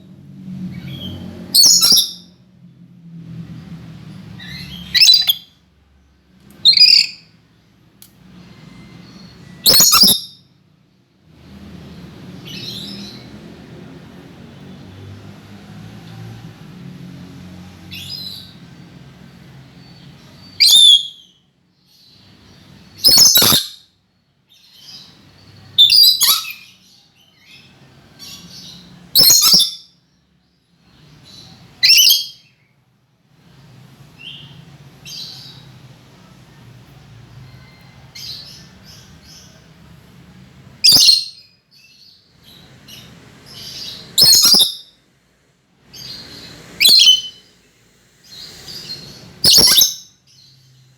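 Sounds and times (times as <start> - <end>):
parrot calling: 0.8 - 2.2, 4.4 - 5.5, 6.6 - 7.2, 9.6 - 10.4, 20.6 - 21.3, 23.0 - 23.8, 25.8 - 26.8, 28.2 - 29.9, 31.3 - 32.5, 40.8 - 41.5, 42.5 - 44.8, 45.9 - 47.5, 48.3 - 50.4
parrot chattering: 4.5 - 5.5, 44.2 - 44.7, 48.6 - 50.0.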